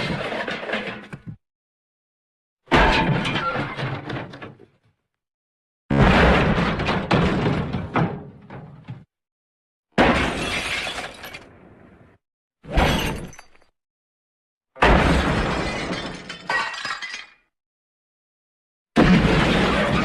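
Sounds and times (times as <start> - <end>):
crash of shattering glass and debris: 10.0 - 11.5, 14.8 - 17.4.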